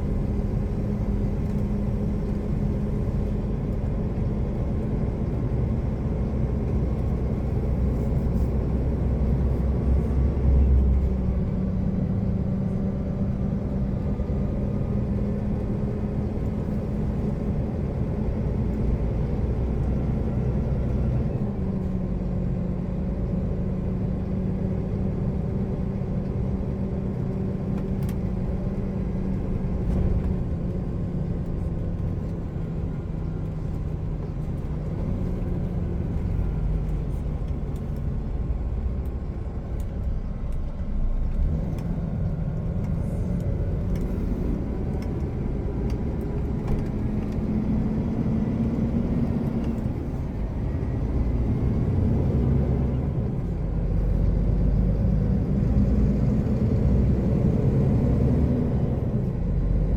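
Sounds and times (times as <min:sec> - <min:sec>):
road and tyre noise: 0:00.0 - 0:59.9.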